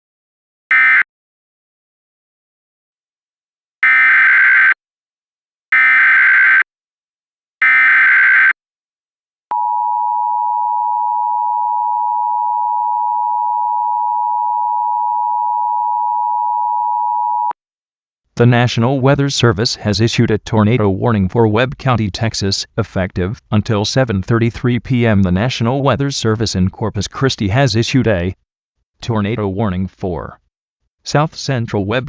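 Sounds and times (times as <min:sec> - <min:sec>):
data burst tones: 0:00.7 - 0:01.0, 0:03.8 - 0:04.8, 0:05.8 - 0:06.6, 0:07.6 - 0:08.6
two-tone attention signal: 0:00.7 - 0:01.0, 0:03.8 - 0:04.8, 0:07.6 - 0:08.5.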